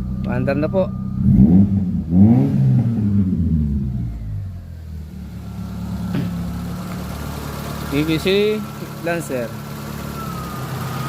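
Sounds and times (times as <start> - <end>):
car engine revving and idling: 0.0 - 11.0.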